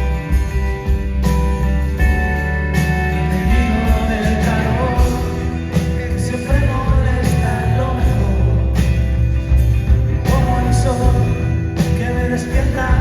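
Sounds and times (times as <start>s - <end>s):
rock band playing live: 0.0s - 13.0s.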